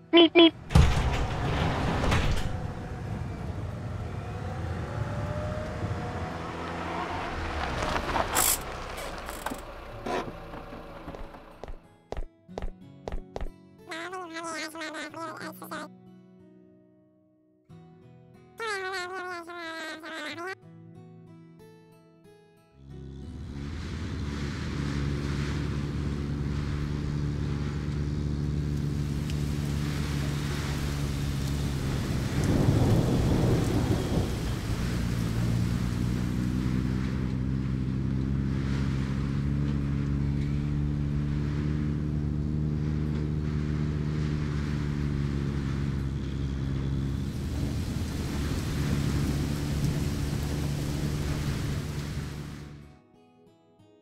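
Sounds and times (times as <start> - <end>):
vehicle engine drone with hiss: 22.9 - 52.8.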